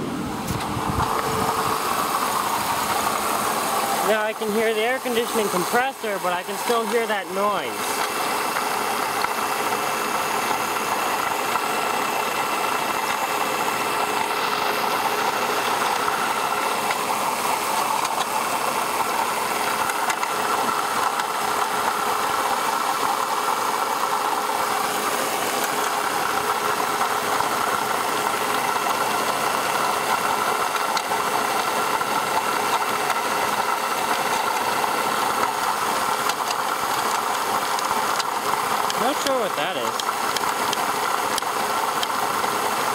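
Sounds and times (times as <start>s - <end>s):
grinding noise: 0.0s - 9.4s
car engine idling: 0.0s - 42.9s
constant whine: 0.0s - 42.9s.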